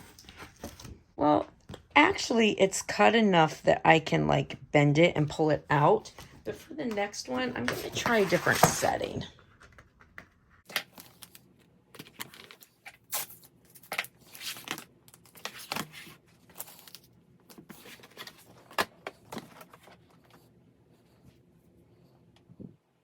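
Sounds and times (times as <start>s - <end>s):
craft materials rustling and scraping: 7.3s - 21.4s.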